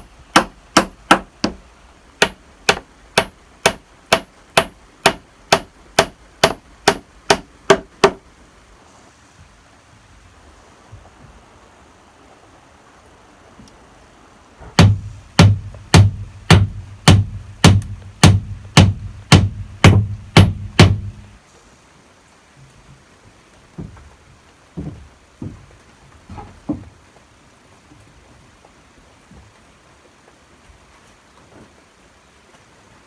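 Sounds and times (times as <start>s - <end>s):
light irregular knocks: 0.0s - 8.2s, 14.6s - 21.4s, 23.7s - 27.0s
hammer blows on wood: 2.2s - 8.2s, 14.8s - 21.4s.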